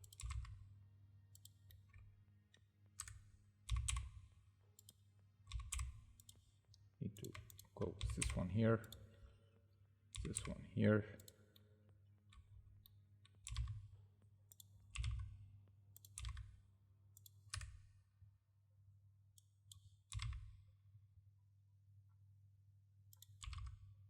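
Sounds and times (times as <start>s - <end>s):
keyboard and mouse clicks: 0.0s - 0.6s, 1.3s - 4.2s, 4.8s - 9.1s, 10.2s - 10.6s, 12.2s - 13.8s, 14.4s - 15.3s, 16.0s - 16.5s, 17.2s - 17.8s, 23.1s - 23.8s.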